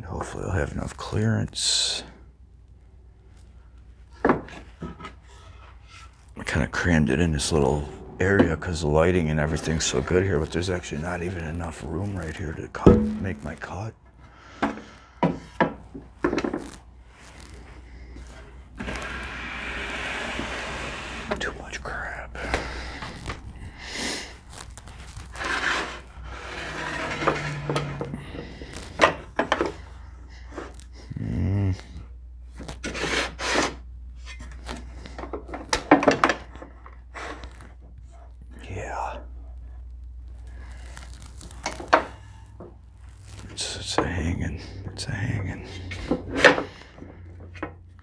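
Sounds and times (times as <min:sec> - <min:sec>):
wood scraping: 0:00.0 - 0:48.0
steady noise: 0:00.8 - 0:36.5, 0:38.4 - 0:47.7.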